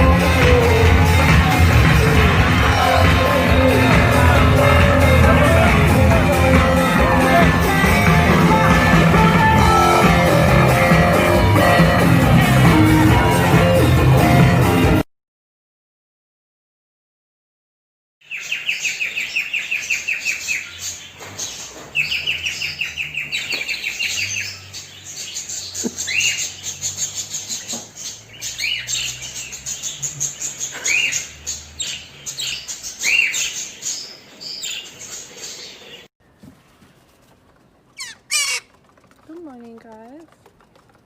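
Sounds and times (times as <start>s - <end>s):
bird chirping: 18.2s - 36.4s, 38.0s - 39.0s.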